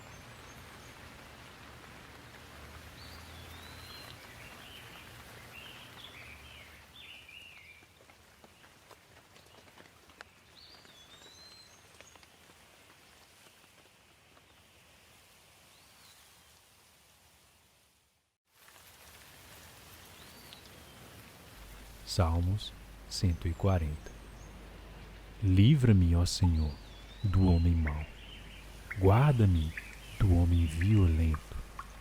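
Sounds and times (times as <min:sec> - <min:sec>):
steady rain: 0:00.0 - 0:32.0
bird chirping: 0:21.7 - 0:32.0.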